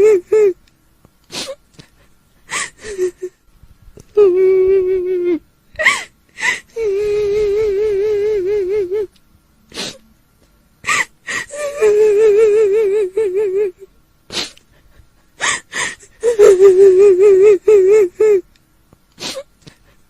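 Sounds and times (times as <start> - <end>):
woman gasping and sobbing: 1.4 - 3.4, 5.8 - 8.7, 10.8 - 12.4, 14.4 - 16.9
woman wailing: 4.1 - 9.1, 10.9 - 13.8, 15.4 - 18.4.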